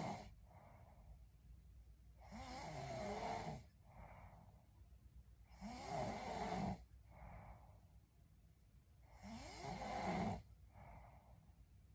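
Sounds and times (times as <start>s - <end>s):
woman snoring: 0.0s - 0.4s, 2.2s - 3.7s, 5.5s - 6.9s, 9.1s - 10.5s
soft breath: 0.0s - 1.5s, 2.1s - 8.2s, 9.0s - 11.9s.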